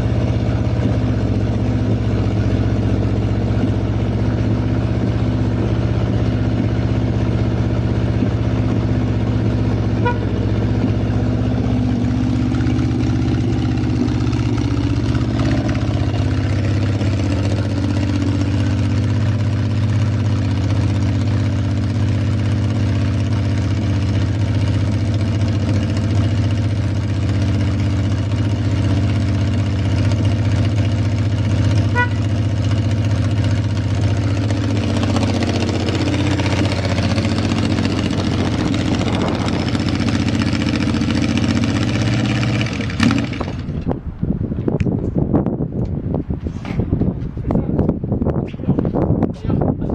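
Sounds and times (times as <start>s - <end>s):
motorcycle engine idling: 0.0s - 44.1s.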